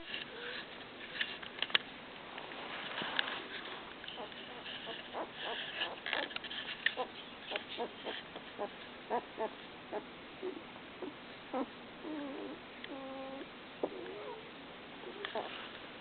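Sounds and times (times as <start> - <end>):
light scuffling and rustling: 0.0 - 9.0, 15.2 - 16.0
puppies squeaking and whimpering: 4.1 - 14.5.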